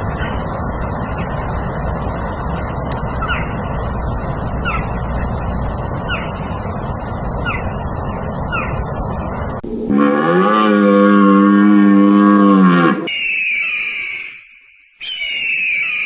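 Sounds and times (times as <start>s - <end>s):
rushing outdoor background noise: 0.0s - 13.1s
bird giving downward-gliding calls: 9.9s - 16.0s.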